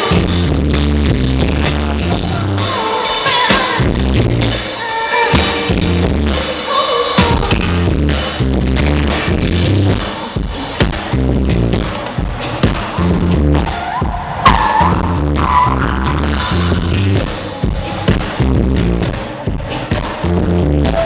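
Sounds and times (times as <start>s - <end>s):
pounding bass line: 0.0s - 6.5s, 7.2s - 21.0s
live band music: 0.0s - 21.0s
person singing: 0.0s - 21.0s
drum hits: 11.8s - 18.4s.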